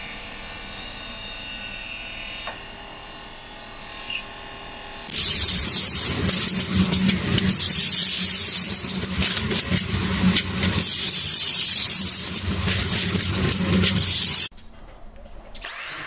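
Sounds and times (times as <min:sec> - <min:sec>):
power tool grinding: 0:05.0 - 0:14.5.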